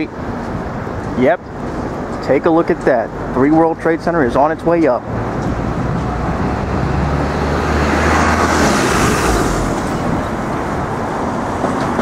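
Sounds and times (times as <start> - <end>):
road traffic passing: 0.0 - 12.0
vehicle passing by: 4.8 - 11.6.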